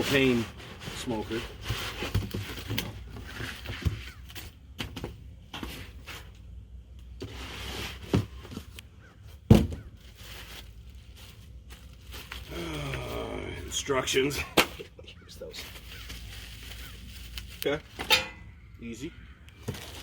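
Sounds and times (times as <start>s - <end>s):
cardboard rustling and scraping: 0.0s - 6.4s, 7.2s - 12.5s, 19.6s - 20.0s.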